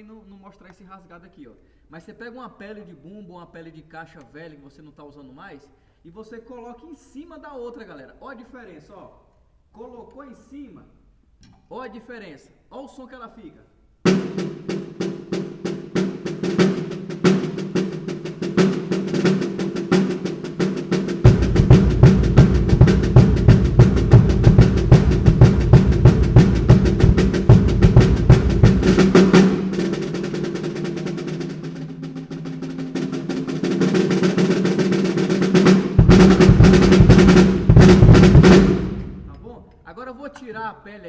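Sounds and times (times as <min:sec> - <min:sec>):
snare drum rolls: 0:14.1 - 0:39.6
deep low drum: 0:18.5 - 0:39.5.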